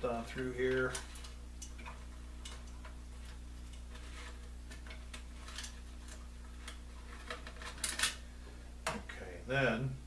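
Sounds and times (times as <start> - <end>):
steady low hum: 0.0 - 10.0
clicks and rattles of wires: 0.3 - 8.2.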